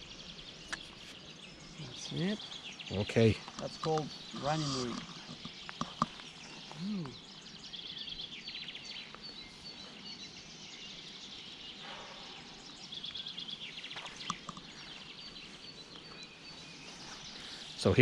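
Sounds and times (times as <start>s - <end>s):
small birds singing: 0.0s - 18.0s.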